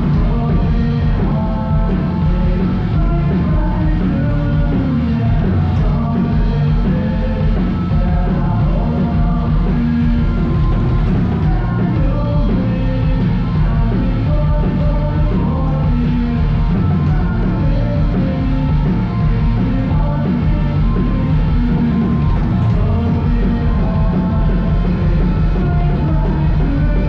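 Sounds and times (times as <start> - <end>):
rock music: 0.0 - 27.0.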